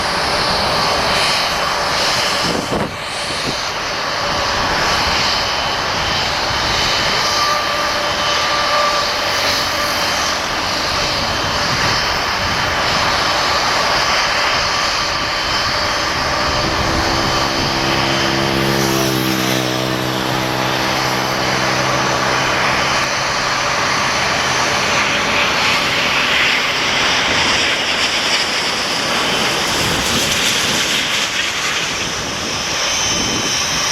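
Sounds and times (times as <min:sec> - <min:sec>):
jet noise: 0:00.0 - 0:33.9
low droning tone: 0:04.3 - 0:30.1.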